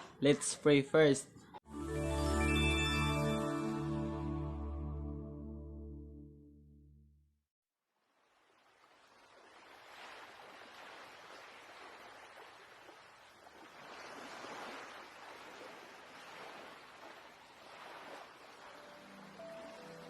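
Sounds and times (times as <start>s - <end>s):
music piece ending: 1.7s - 7.1s
ocean waves washing ashore: 8.3s - 20.0s.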